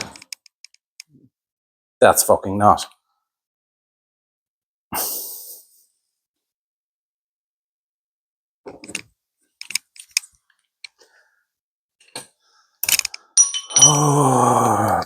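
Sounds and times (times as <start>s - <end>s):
hand tools clicking and clinking: 12.8s - 15.0s.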